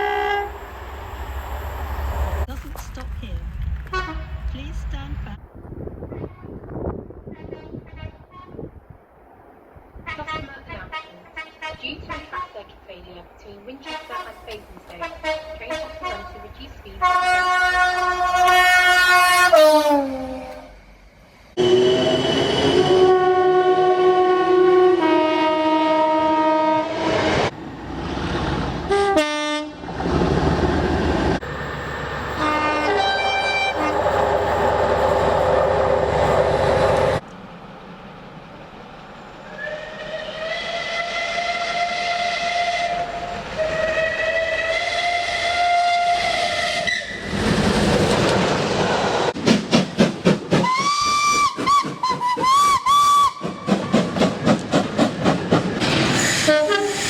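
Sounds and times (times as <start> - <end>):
multi-tone train air horn: 0.0 - 0.6, 7.3 - 8.7, 10.1 - 12.6, 13.8 - 20.7, 21.6 - 27.4, 28.9 - 29.8, 32.4 - 34.6, 39.6 - 47.3, 56.3 - 57.0
train running with clatter: 0.0 - 5.4, 27.5 - 39.7, 46.3 - 57.0.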